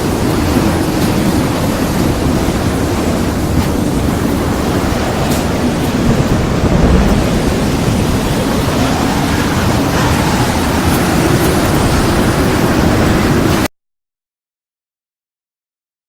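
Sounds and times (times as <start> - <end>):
heavy rain: 0.0 - 13.7
wind: 0.0 - 13.7
deep rumble: 3.7 - 13.2.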